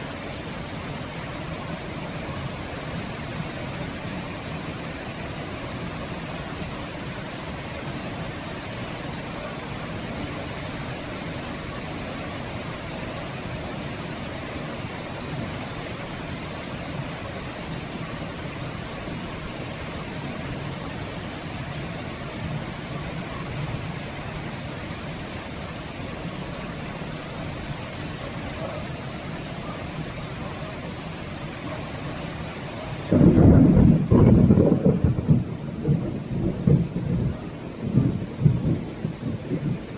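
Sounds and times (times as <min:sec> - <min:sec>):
steady rain falling: 0:00.0 - 0:39.9
thunder rumbling: 0:33.0 - 0:39.9.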